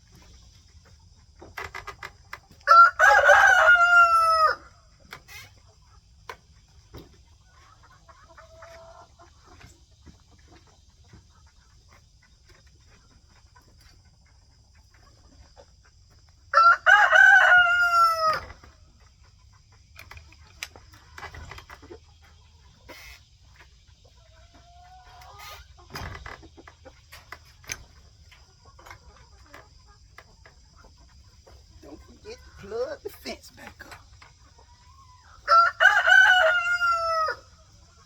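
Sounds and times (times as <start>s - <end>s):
chicken clucking: 0.0s - 38.0s
rooster crowing: 2.6s - 4.8s, 16.5s - 18.6s, 35.4s - 37.6s.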